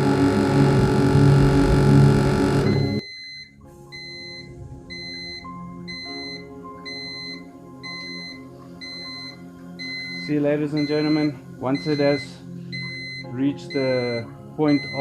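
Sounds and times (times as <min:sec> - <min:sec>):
compressor running: 0:00.0 - 0:03.0
pressure alarm beeping: 0:01.8 - 0:15.0.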